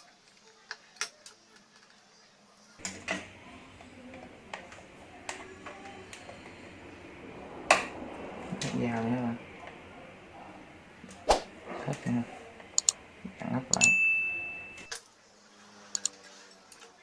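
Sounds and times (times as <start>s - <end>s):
low steady hum: 2.8s - 15.0s
computer hardware clicks and taps: 12.8s - 13.0s.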